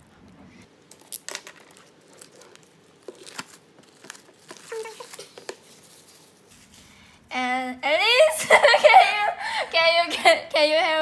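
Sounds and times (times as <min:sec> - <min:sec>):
plastic crinkling: 0:00.7 - 0:06.9
plastic shrink wrap tearing: 0:00.9 - 0:06.5.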